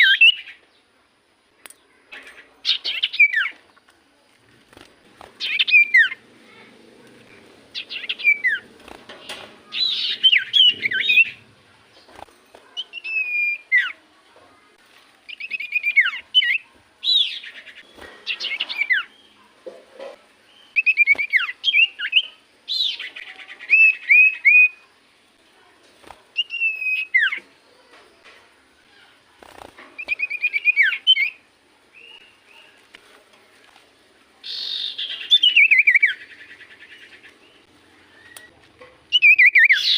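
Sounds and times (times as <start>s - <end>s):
bird whistling and chattering: 0.0s - 0.6s, 2.6s - 3.6s, 5.4s - 6.2s, 7.7s - 8.7s, 9.7s - 11.4s, 12.8s - 14.0s, 15.3s - 19.2s, 20.7s - 24.8s, 26.4s - 27.4s, 30.0s - 31.4s, 34.4s - 37.1s, 38.0s - 39.9s.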